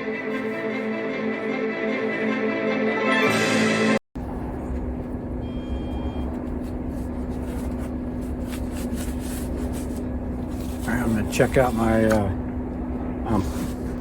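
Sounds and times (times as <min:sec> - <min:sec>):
background music: 0:00.0 - 0:04.0
constant hum: 0:04.2 - 0:14.0.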